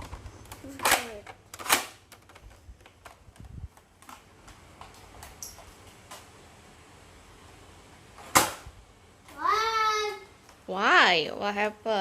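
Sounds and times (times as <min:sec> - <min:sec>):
loud sharp snap: 0:08.3 - 0:08.7.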